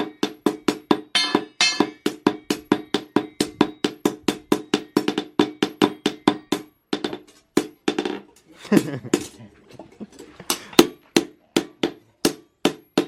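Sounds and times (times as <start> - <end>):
hammer striking steel on anvil: 0.0 - 6.8.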